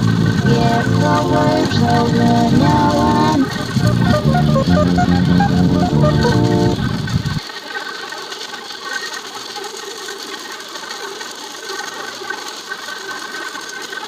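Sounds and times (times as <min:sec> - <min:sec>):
music: 0:00.0 - 0:07.4.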